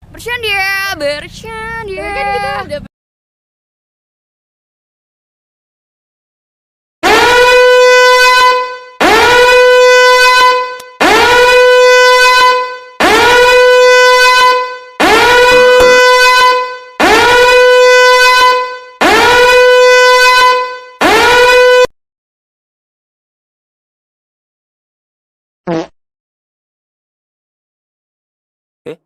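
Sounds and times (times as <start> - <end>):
loud horn blasts: 7.0 - 21.9.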